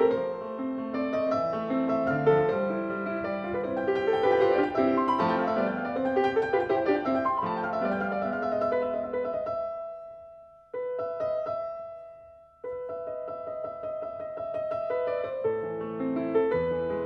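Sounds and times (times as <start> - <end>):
solo piano music: 0.0 - 17.0.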